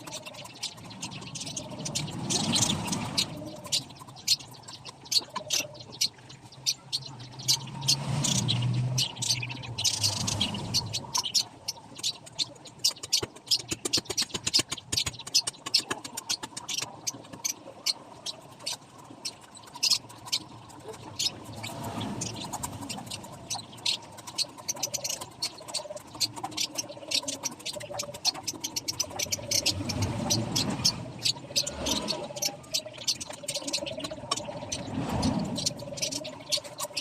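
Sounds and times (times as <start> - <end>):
light clicking and scratching: 9.2 - 37.0.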